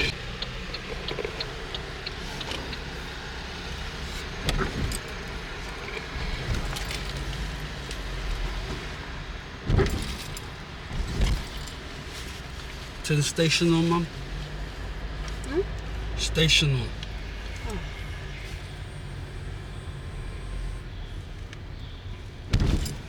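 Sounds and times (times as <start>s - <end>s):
car engine and road noise: 0.0s - 23.0s
short thump: 9.7s - 11.7s.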